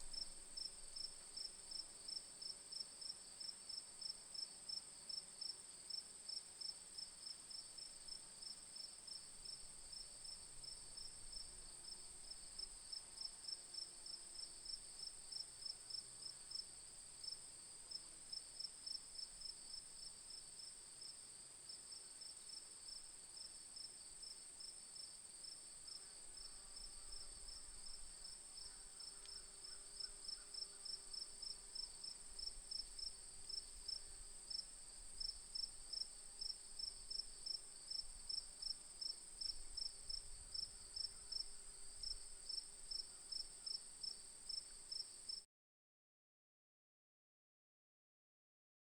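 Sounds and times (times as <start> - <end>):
crickets chirping: 22.4 - 45.4.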